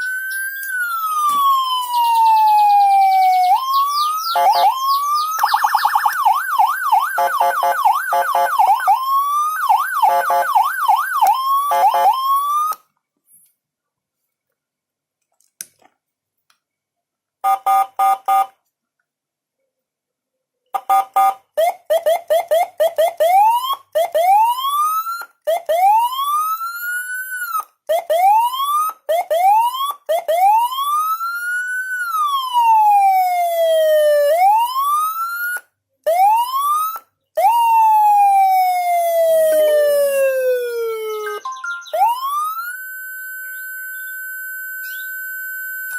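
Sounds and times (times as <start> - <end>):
electronic siren tones: 0.0 - 12.8, 29.1 - 45.9.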